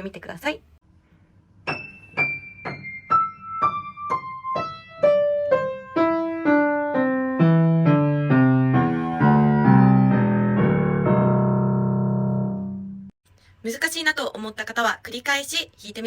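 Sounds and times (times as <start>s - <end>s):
descending piano notes: 1.6s - 13.2s.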